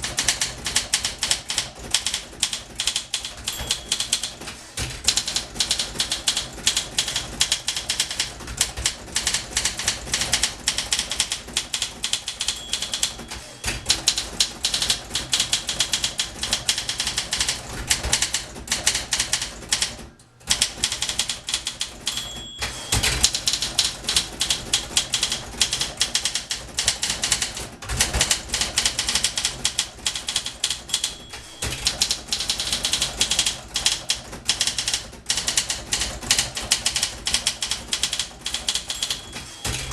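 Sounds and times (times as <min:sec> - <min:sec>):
typewriter keys clacking: 0:00.0 - 0:39.9
typewriter margin bell ding: 0:03.2 - 0:05.1, 0:12.1 - 0:14.4, 0:21.8 - 0:25.1, 0:30.4 - 0:33.1, 0:37.6 - 0:39.9.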